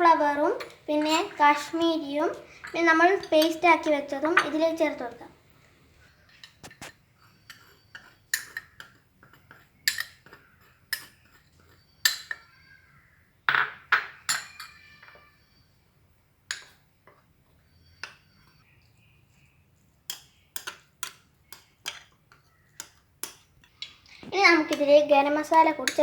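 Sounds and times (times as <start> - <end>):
spoon clinking against bowl: 6.4 - 12.6, 13.6 - 15.1, 20.1 - 24.0.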